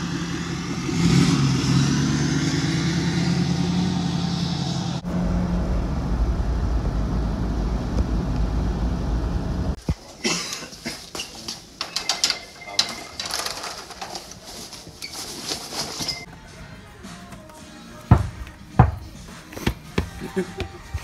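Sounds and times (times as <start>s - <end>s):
vehicle engine driving: 0.0s - 9.8s.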